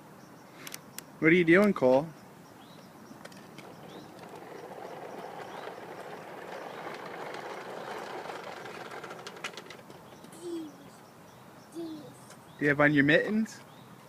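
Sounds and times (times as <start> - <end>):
passing vehicle rushing: 3.4 - 9.6.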